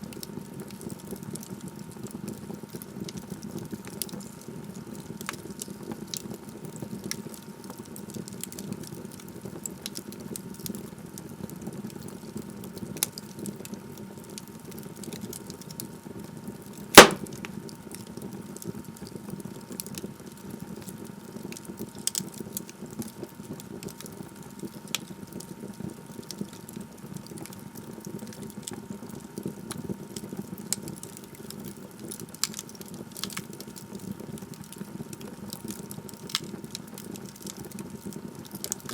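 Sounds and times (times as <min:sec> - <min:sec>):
loud sharp pop: 0:17.0 - 0:17.4
log fire crackling: 0:17.0 - 0:18.3, 0:21.0 - 0:24.0, 0:27.2 - 0:38.9.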